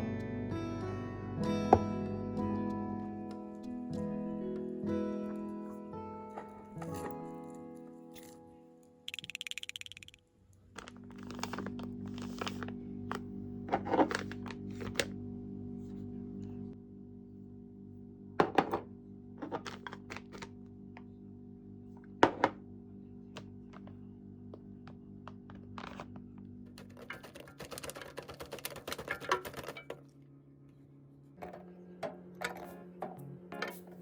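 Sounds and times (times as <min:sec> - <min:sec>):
quiet background music: 0:00.0 - 0:09.1, 0:26.7 - 0:34.0
rapid rustling and clicking: 0:26.7 - 0:30.0.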